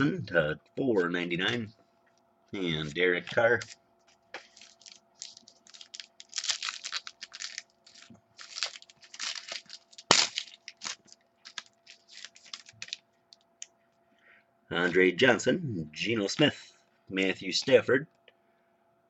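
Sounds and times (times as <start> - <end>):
cards and packaging rustling: 2.8 - 13.4.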